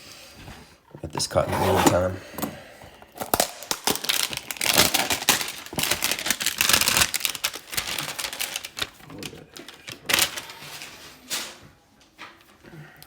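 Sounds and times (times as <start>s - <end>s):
cardboard packaging being cut open: 1.2s - 2.2s, 3.2s - 10.5s.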